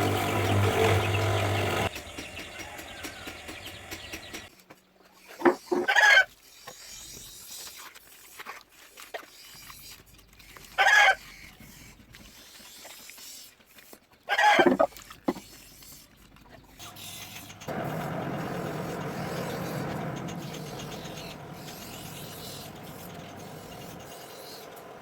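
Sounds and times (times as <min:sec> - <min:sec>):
chicken clucking: 0:00.0 - 0:04.5.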